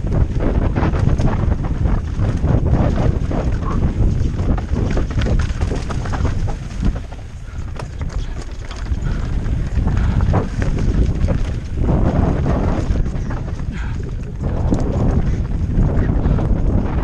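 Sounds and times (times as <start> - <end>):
wind buffeting microphone: 0.0 - 17.0
rattling clicks and knocks: 3.3 - 16.1.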